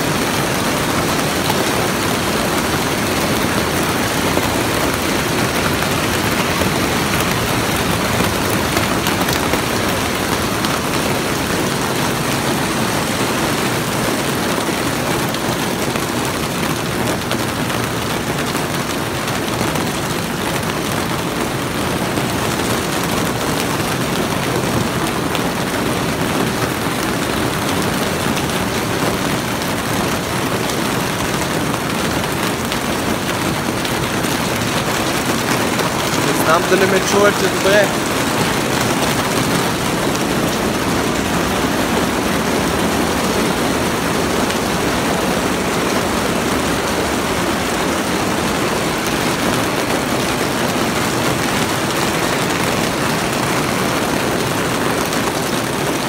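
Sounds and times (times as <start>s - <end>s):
hail and rain on greenhouse roof: 0.0s - 56.0s.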